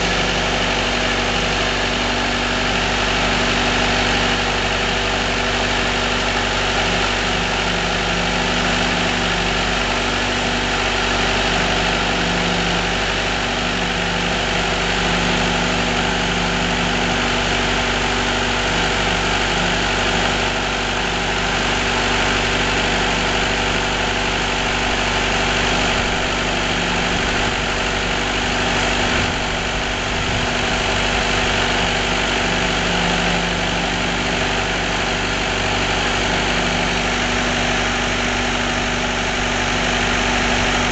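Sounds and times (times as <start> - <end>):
engine running steadily: 0.0 - 40.9
wavering low hum: 24.6 - 32.0.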